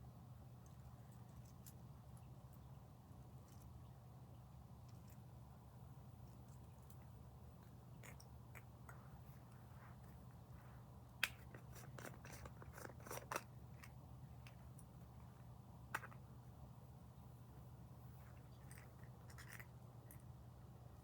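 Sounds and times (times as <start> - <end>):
low steady hum: 0.0 - 21.0
faint clicks and rustles: 18.0 - 20.3.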